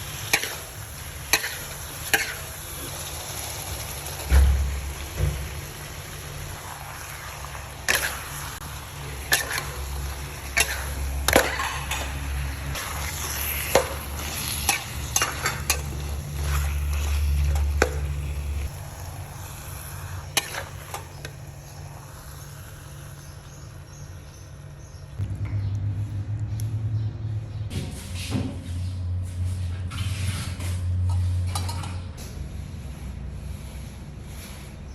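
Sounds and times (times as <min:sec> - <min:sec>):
utensil scraping a pan: 0:00.0 - 0:02.9, 0:07.0 - 0:18.8, 0:20.2 - 0:21.4
food sizzling in a pan: 0:00.0 - 0:23.8
low hum: 0:25.2 - 0:28.1.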